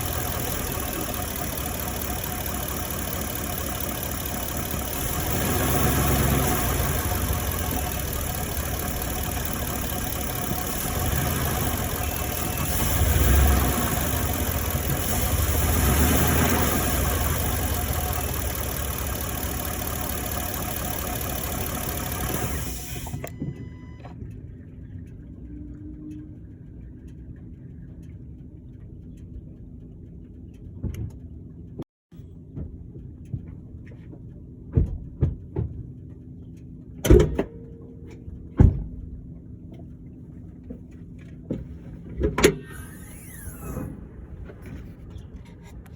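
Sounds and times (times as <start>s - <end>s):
engine running: 0.0s - 23.8s, 40.6s - 45.9s
small clicks: 0.0s - 24.2s
low hum: 0.0s - 30.7s.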